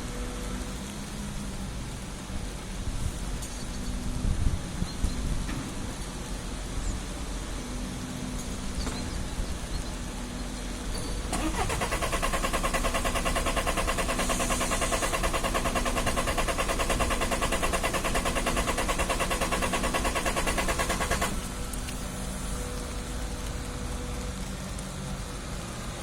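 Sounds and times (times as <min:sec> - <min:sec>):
starter motor cranking engine: 0:11.3 - 0:21.7.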